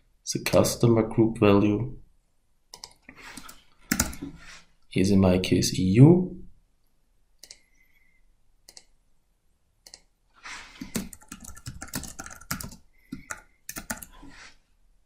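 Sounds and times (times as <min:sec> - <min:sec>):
typing on computer keyboard: 0:02.7 - 0:04.2, 0:10.8 - 0:14.1.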